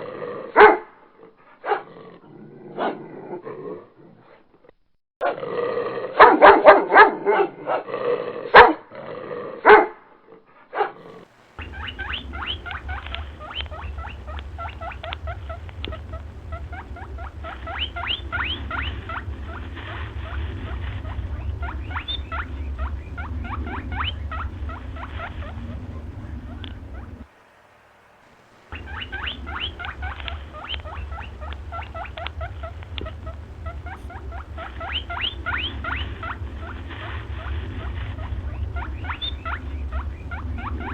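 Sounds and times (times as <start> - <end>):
animal squeaking: 11.1 - 40.9
low hum: 11.3 - 40.9.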